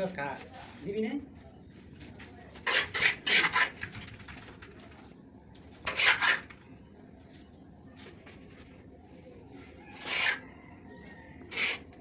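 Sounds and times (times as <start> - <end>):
trowel scraping mortar: 2.6 - 4.0, 5.8 - 6.6, 9.9 - 10.4, 11.5 - 11.9.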